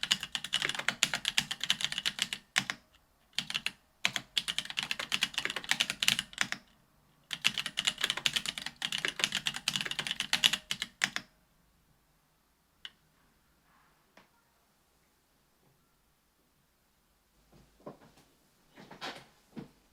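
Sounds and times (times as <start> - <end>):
typing on mechanical keyboard: 0.0 - 6.7, 7.3 - 11.3.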